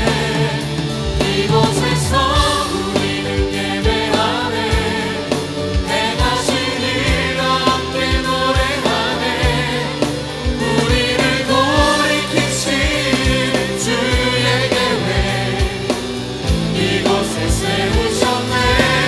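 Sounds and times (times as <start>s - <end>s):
band playing: 0.0s - 19.0s
choir singing: 0.0s - 19.0s.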